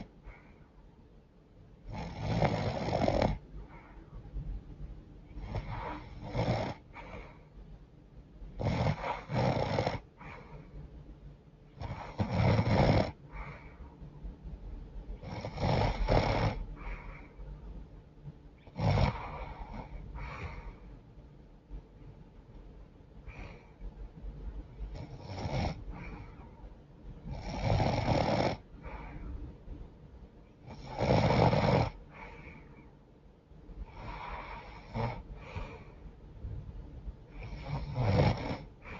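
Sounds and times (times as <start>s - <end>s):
quiet breaths: 0.0s - 38.9s
woman snoring: 1.8s - 3.4s, 5.4s - 7.0s, 8.6s - 10.1s, 11.8s - 13.2s, 15.2s - 16.7s, 18.7s - 20.0s, 24.9s - 25.9s, 27.3s - 28.6s, 30.6s - 32.0s, 33.8s - 35.3s, 37.3s - 38.9s.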